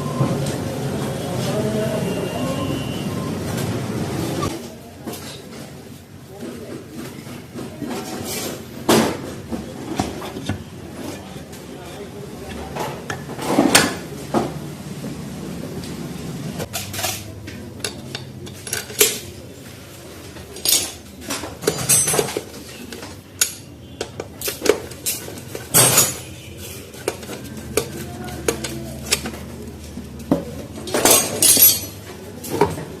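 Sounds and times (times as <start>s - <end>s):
metal tools clinking: 20.6s - 23.8s, 30.8s - 32.1s.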